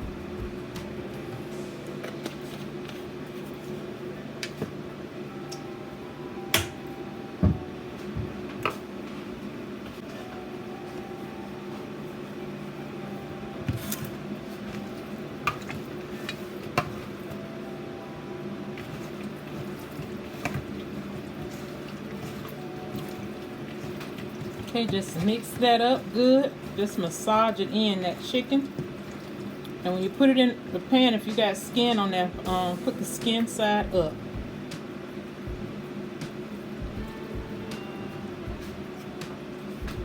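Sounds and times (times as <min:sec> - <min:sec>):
steady low hum: 0:00.0 - 0:40.0
wet squishing of hands mixing: 0:13.8 - 0:17.3, 0:18.7 - 0:34.7.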